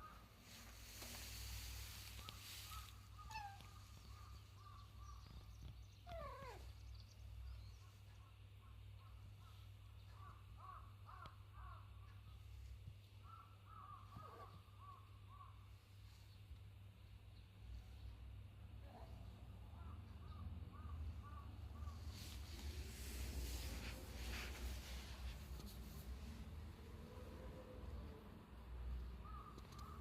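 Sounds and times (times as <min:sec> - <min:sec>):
animal chirping calls: 0:02.3 - 0:04.8.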